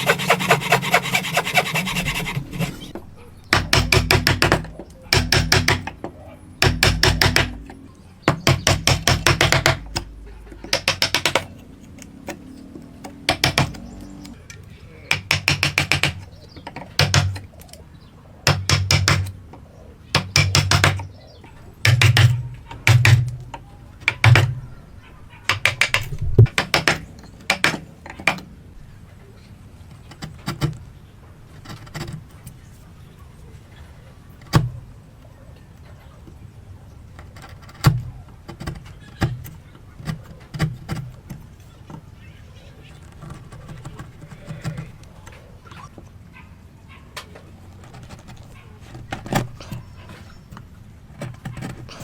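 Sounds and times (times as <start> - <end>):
rapid tapping on wood: 0.0 - 7.7, 8.3 - 11.5, 13.2 - 13.9, 15.1 - 17.5, 18.4 - 19.4, 20.1 - 21.1, 21.8 - 24.6, 25.5 - 28.4
knocks on wood: 3.5 - 7.7, 8.3 - 11.5, 16.8 - 17.4, 21.8 - 23.4.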